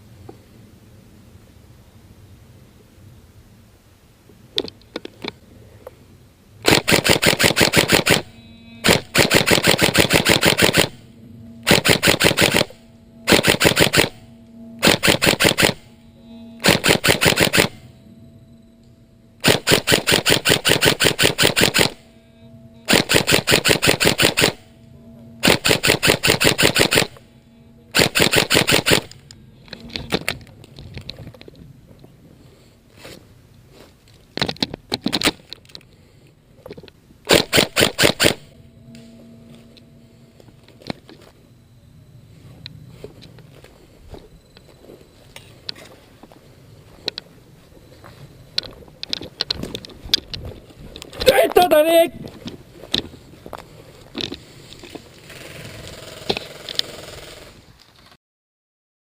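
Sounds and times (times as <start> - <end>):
airsoft gun firing bursts: 6.6 - 11.0, 11.6 - 14.2, 14.8 - 15.8, 16.6 - 17.8, 19.4 - 22.0, 22.9 - 24.6, 25.4 - 27.2, 27.9 - 29.2, 37.3 - 38.5
gearbox motor whine: 6.7 - 32.0, 37.4 - 51.3.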